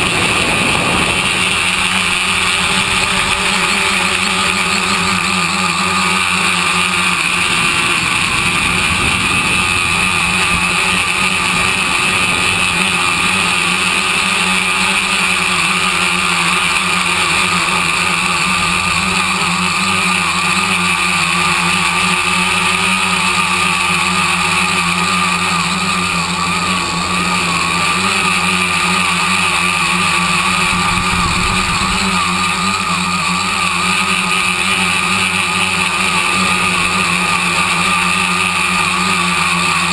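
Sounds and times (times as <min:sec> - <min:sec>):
wind rumble: 0:00.0 - 0:03.6, 0:07.3 - 0:14.3, 0:30.5 - 0:32.3
drone motors whining: 0:00.0 - 0:39.9.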